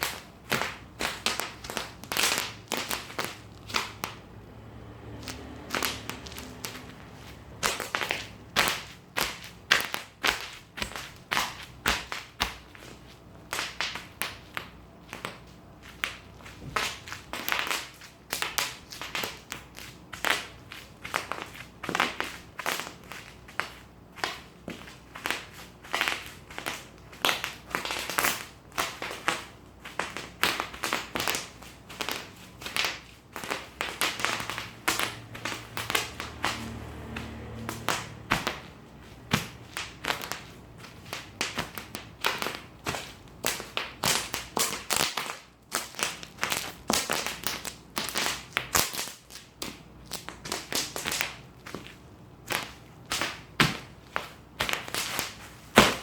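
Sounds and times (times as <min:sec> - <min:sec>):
bubble wrap popping: 0:00.0 - 0:04.2, 0:05.2 - 0:56.0.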